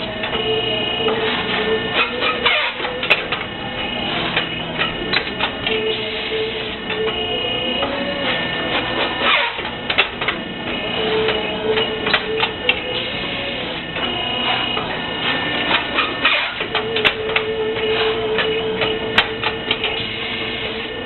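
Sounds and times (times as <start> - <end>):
machine whine: 0.0 - 21.0
metal parts clanking: 1.1 - 5.9, 14.0 - 20.0.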